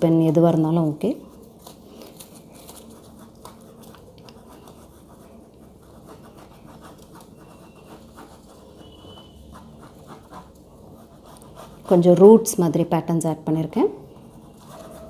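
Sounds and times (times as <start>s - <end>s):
pen scratching on paper: 2.6s - 12.6s, 14.0s - 15.0s.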